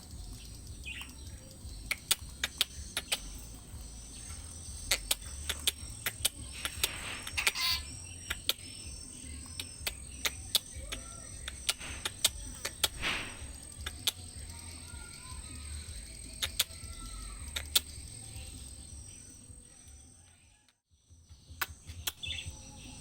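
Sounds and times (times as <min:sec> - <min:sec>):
low wind rumble: 0:00.0 - 0:19.7
high-pitched insect drone: 0:00.0 - 0:20.2
short sharp bird calls: 0:00.9 - 0:14.3.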